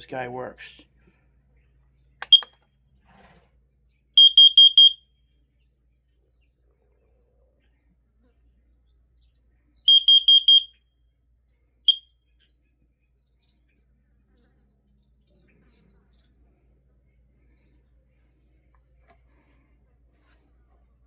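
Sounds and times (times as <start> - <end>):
high-pitched alarm beeps: 2.2 - 2.5, 4.2 - 5.0, 9.9 - 10.8.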